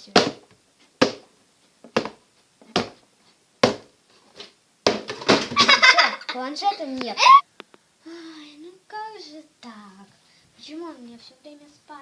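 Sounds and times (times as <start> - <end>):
sharp knocks: 1.0 - 1.3, 3.6 - 3.9, 4.8 - 5.7.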